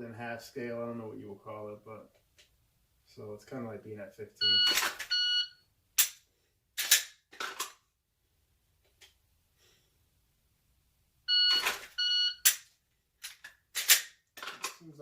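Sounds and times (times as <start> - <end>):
shot timer beeps: 4.4 - 5.6, 11.3 - 12.5
pistol handling clicks and rustles: 6.0 - 7.8, 11.6 - 14.8.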